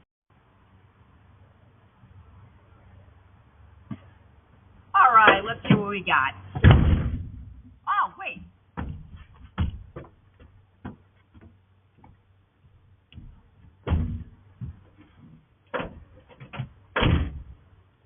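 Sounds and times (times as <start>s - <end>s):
knocks and thumps: 6.5s - 7.8s, 8.8s - 12.2s, 13.1s - 17.6s.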